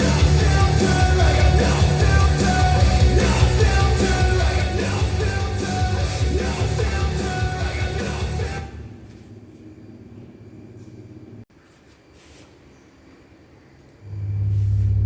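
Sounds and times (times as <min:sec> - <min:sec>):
heavy bass line: 0:00.0 - 0:08.8, 0:14.1 - 0:15.0
rock song with singing: 0:00.0 - 0:09.0.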